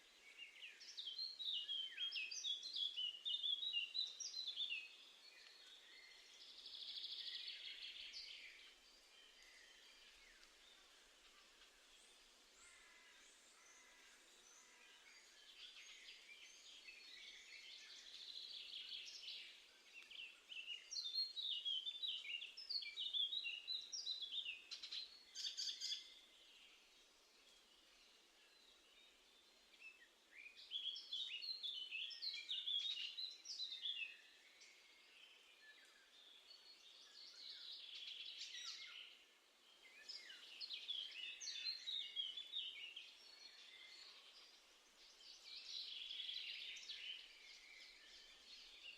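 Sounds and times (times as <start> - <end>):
songbirds twittering: 0.0 - 48.9.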